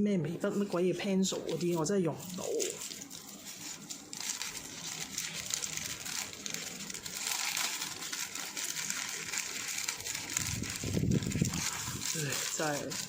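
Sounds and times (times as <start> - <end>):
packaging rustling: 0.4 - 13.0.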